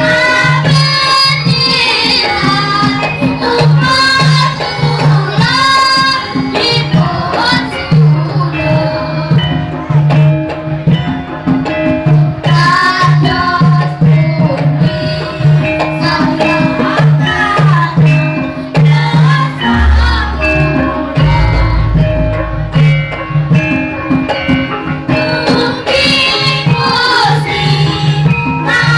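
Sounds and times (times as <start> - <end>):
deep low tone: 19.6 - 24.0
gamelan ensemble playing: 19.6 - 24.9.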